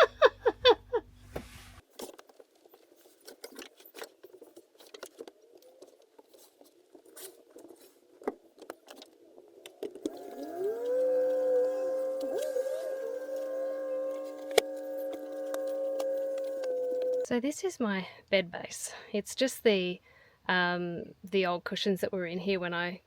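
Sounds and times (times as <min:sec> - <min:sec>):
handling clicks and rustles: 0:01.8 - 0:17.3.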